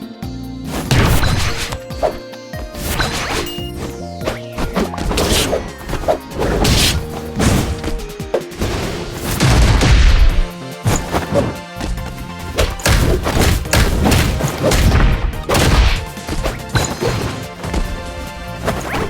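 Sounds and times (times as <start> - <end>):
loud bangs and crashes: 8.6 - 18.8.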